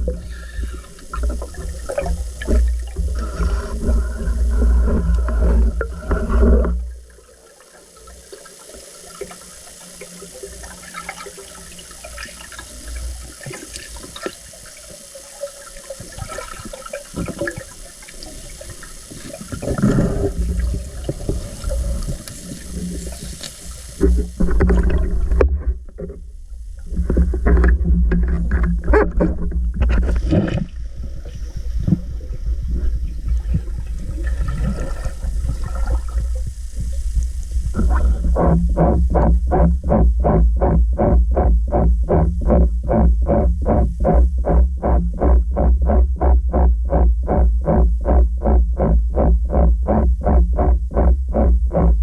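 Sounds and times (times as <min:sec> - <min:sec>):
underwater splashing and bubbling: 0:00.0 - 0:52.0
fine crackling ticks: 0:08.0 - 0:25.5.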